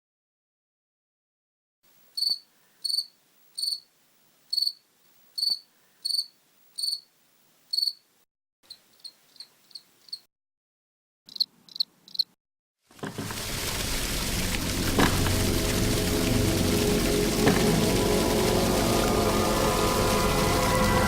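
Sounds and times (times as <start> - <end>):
cricket chirping: 2.2 - 3.9, 4.5 - 4.8, 5.4 - 7.1, 7.7 - 8.0, 8.7 - 10.3, 11.3 - 12.4.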